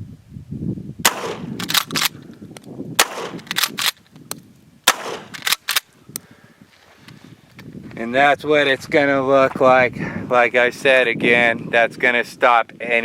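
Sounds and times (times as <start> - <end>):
shotgun blasts: 1.0 - 2.1, 3.0 - 3.9, 4.8 - 5.6
shotgun slide racking clacks: 1.6 - 2.2, 3.3 - 4.3, 5.2 - 5.9.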